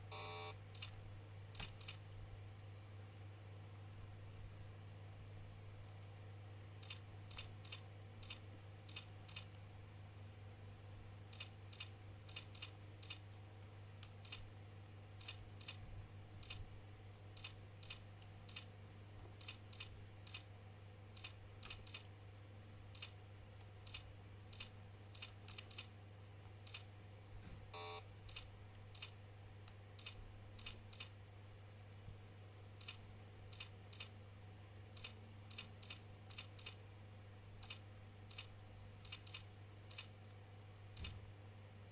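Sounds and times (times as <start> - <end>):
steady low hum: 0.0 - 41.9
keyboard key clicks: 1.6 - 2.0.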